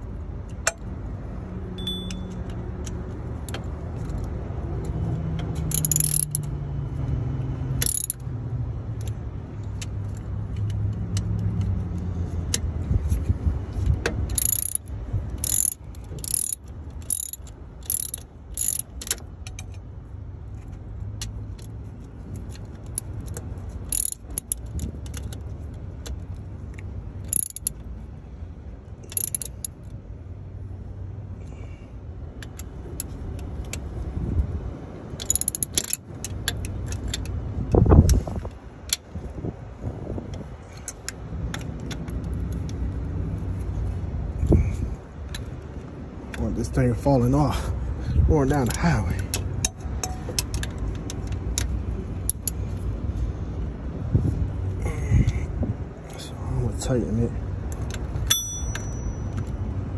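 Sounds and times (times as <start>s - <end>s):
metal tools clinking on bolts: 1.8s - 2.6s, 5.5s - 6.5s, 7.8s - 8.3s, 14.3s - 19.8s, 22.5s - 25.4s, 27.2s - 27.8s, 29.0s - 29.9s, 35.1s - 37.3s, 48.4s - 52.8s, 57.7s - 59.7s.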